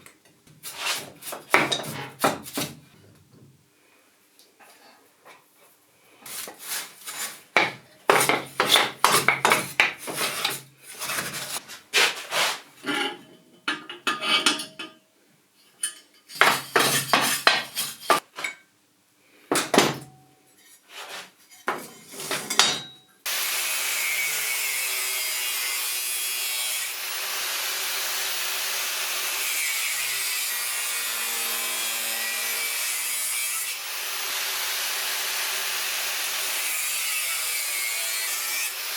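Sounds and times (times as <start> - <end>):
power tool grinding: 23.3 - 38.9.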